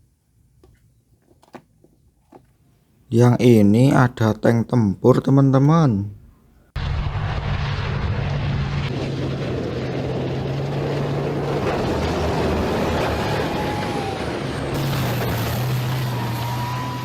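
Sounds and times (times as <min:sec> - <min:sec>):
motor drone: 0:06.8 - 0:17.0.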